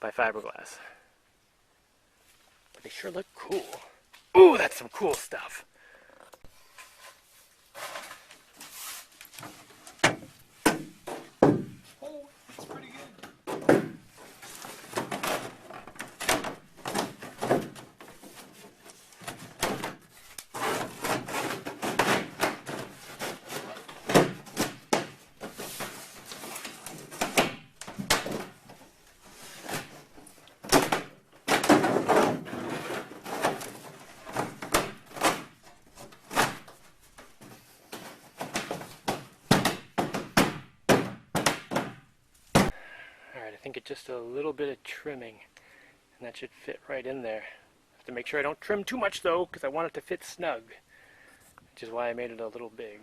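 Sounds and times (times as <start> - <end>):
fiberglass parts scraping: 14.1 - 30.7, 31.7 - 39.1.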